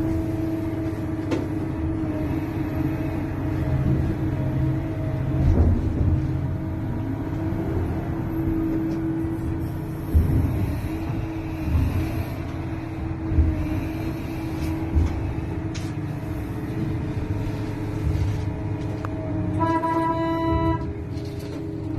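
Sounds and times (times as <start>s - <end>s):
diesel engine rumbling: 0.0s - 21.9s
horn-like tone: 19.5s - 21.0s.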